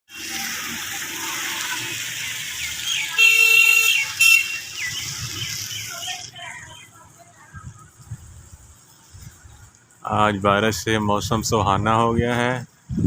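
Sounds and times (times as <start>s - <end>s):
vehicle horn honking: 3.1s - 4.8s.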